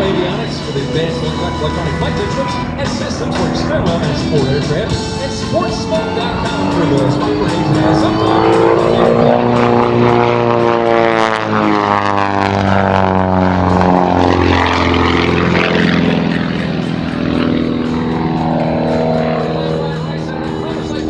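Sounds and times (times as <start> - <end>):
propeller plane engine in flight: 0.0 - 21.0.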